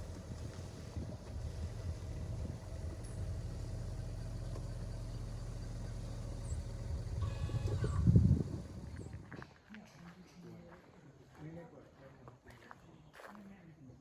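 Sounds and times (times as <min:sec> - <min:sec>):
vehicle engine humming: 0:00.0 - 0:09.3.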